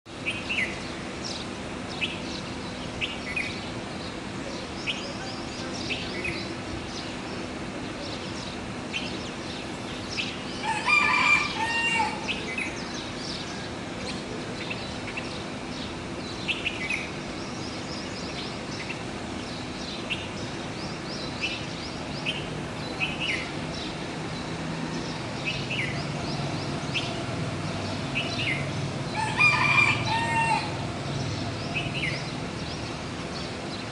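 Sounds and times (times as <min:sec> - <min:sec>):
birds chirping: 0:00.1 - 0:33.9
rooster crowing: 0:10.6 - 0:12.3, 0:29.1 - 0:30.9.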